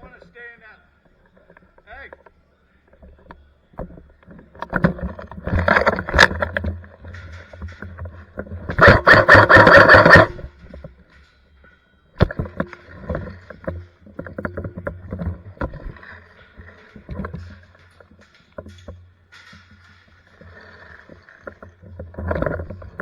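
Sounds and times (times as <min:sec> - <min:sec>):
clicks and knocks of gear: 0:01.0 - 0:23.0
airsoft gun rapid burst: 0:08.8 - 0:10.4.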